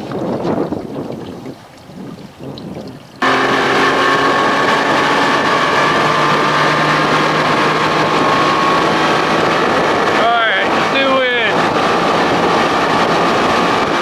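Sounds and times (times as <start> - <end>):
wind noise: 0.0 - 14.0
outboard motor running fast: 3.2 - 14.0.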